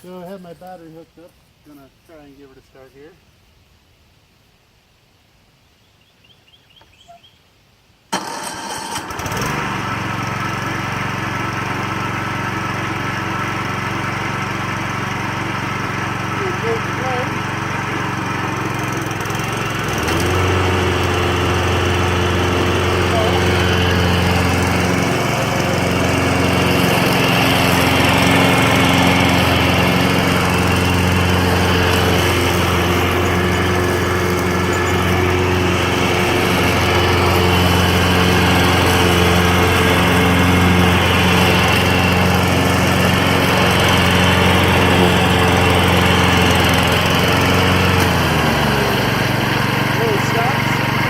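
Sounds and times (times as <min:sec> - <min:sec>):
lawn mower engine running: 0:08.1 - 0:51.0.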